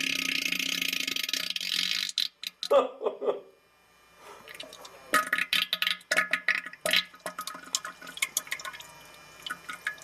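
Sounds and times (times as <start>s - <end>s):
water splashing and dripping: 4.5s - 10.0s.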